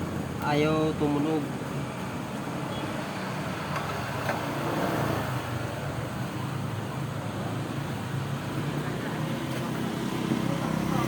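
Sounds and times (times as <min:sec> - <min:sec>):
road traffic rumble: 0:00.0 - 0:11.0.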